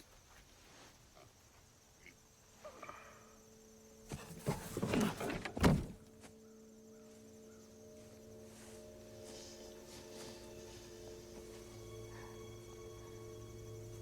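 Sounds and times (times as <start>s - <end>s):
low musical drone: 6.0s - 14.0s.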